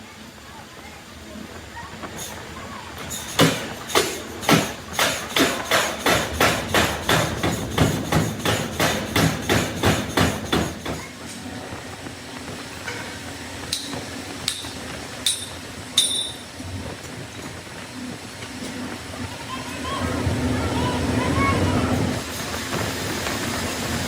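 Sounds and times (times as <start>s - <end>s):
hammer striking metal: 3.2s - 11.0s, 14.5s - 16.4s
ringing metallic clinks: 15.3s - 16.5s.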